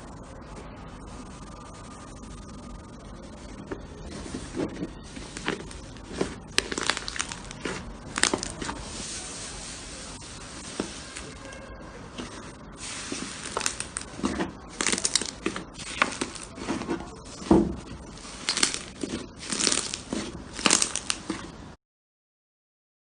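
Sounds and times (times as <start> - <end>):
slime crackling pops: 5.2 - 8.8, 13.1 - 16.8, 18.2 - 21.5.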